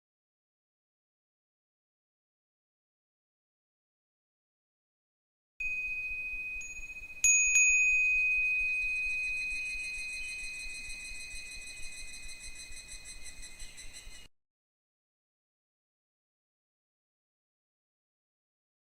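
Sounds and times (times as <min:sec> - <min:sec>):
wind bell ringing: 0:05.6 - 0:13.8.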